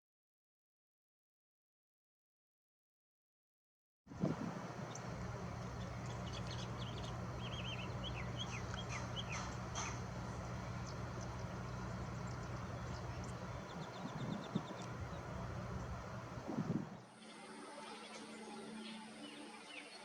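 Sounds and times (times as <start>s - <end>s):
steady low hum: 4.1s - 17.1s
bird twittering: 4.6s - 16.8s.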